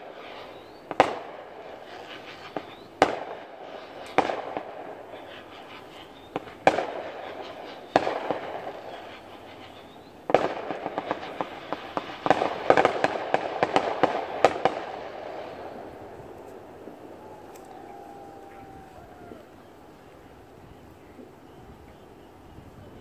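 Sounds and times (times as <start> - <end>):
fireworks crackling pops: 0.0 - 19.6
fireworks bangs: 0.0 - 20.1.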